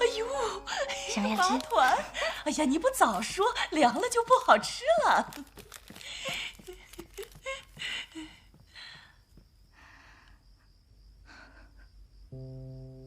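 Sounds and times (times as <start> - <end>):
soft background music: 0.0 - 4.5.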